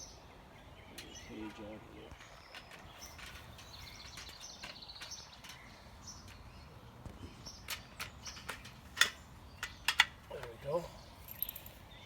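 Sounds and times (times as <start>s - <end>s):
songbirds chirping and trilling: 0.0s - 12.0s
wire cage clicks: 7.6s - 10.6s.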